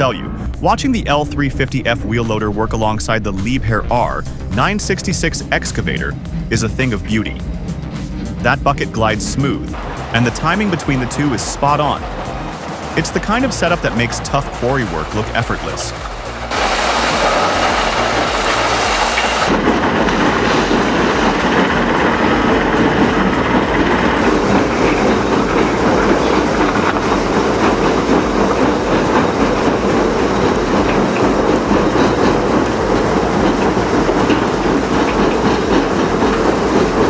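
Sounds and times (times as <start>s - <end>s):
heavy machinery engine drone: 0.0s - 37.0s
metallic rattle and clatter: 9.2s - 37.0s.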